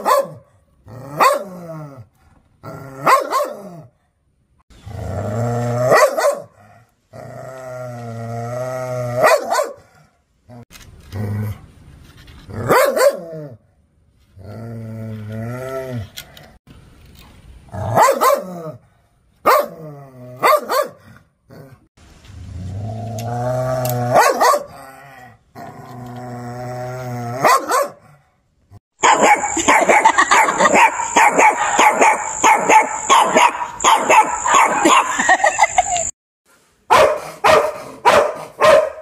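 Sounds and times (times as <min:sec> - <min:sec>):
dog barking: 0:00.0 - 0:00.5, 0:01.2 - 0:01.6, 0:03.0 - 0:03.7, 0:05.9 - 0:06.6, 0:09.2 - 0:09.9, 0:12.7 - 0:13.3, 0:17.9 - 0:18.7, 0:19.4 - 0:19.8, 0:20.4 - 0:21.0, 0:24.1 - 0:24.8, 0:27.4 - 0:28.1, 0:29.0 - 0:35.2, 0:36.9 - 0:39.0
dog growling: 0:04.8 - 0:09.2, 0:22.5 - 0:28.2.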